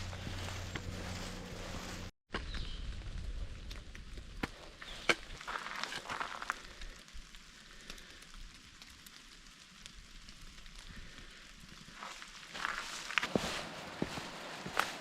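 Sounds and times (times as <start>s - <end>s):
rain falling: 6.5s - 15.0s.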